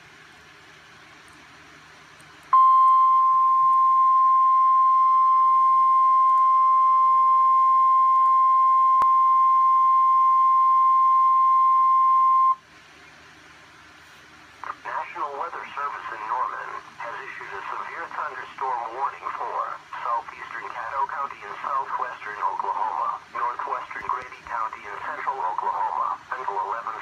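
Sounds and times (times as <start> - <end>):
high-pitched alarm tone: 2.6 - 12.6
faint radio hiss: 10.4 - 27.0.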